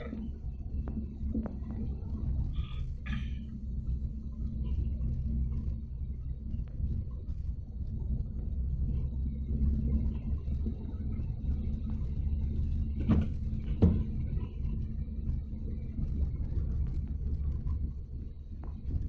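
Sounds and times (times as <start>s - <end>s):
car engine and tyre rumble: 0.0s - 19.0s.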